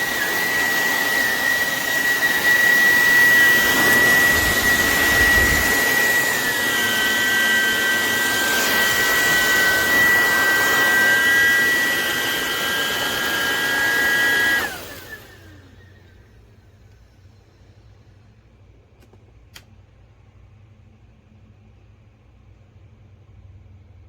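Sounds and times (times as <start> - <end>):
vacuum motor spinning down: 0.0 - 16.8
stick vacuum whining: 0.0 - 17.2.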